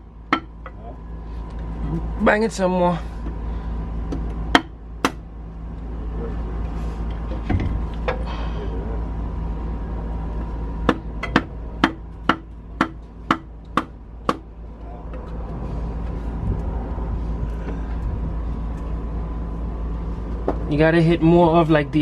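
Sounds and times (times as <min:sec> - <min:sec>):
steady low hum: 0:00.0 - 0:22.0
hammer blows on metal engine: 0:00.2 - 0:00.8, 0:04.1 - 0:05.3, 0:10.8 - 0:14.5.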